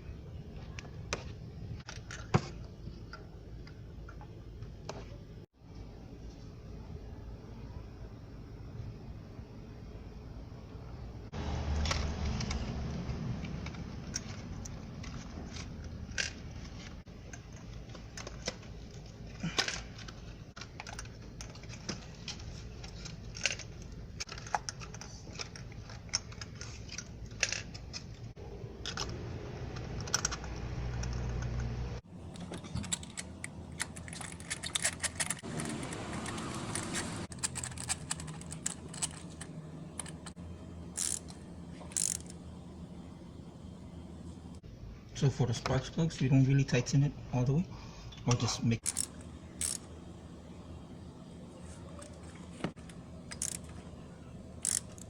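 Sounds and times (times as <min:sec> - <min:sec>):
steady low hum: 0:00.0 - 0:55.0
metallic clicks of hand tools: 0:48.8 - 0:49.8, 0:53.3 - 0:53.7, 0:54.6 - 0:55.0.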